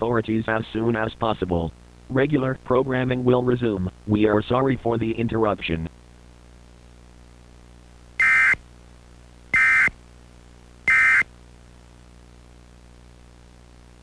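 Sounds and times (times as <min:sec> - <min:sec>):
buzzy digital data tones: 0:08.2 - 0:08.6, 0:09.6 - 0:09.9, 0:10.9 - 0:11.3.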